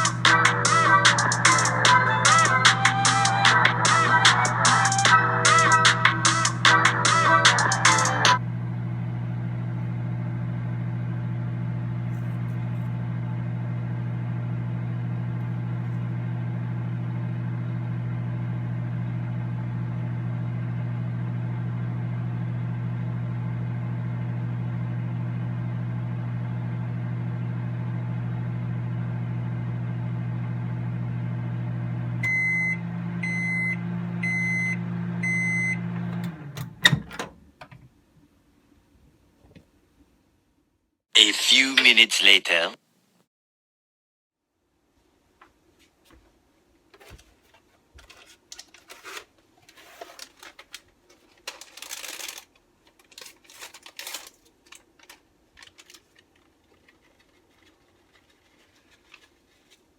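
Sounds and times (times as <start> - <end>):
microwave oven humming: 0.0 - 37.9.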